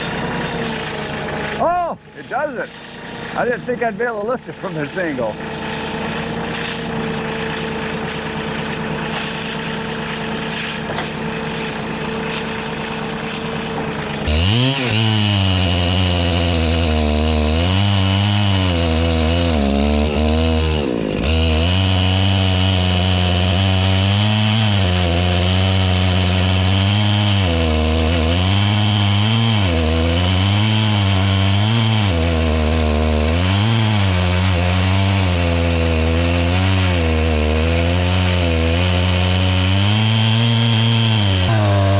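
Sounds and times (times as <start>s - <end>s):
chainsaw cutting log: 0.0s - 41.9s.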